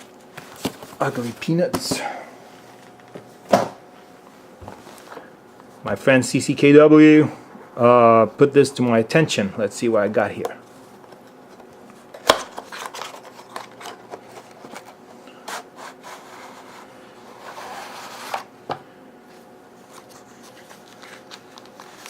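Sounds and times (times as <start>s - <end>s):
packaging rubbing and scraping: 12.4s - 18.5s, 19.8s - 22.0s.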